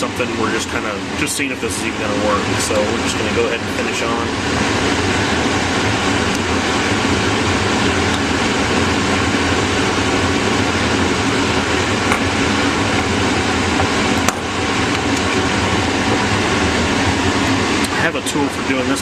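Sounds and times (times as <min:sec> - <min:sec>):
fan-like air noise: 0:00.0 - 0:19.0.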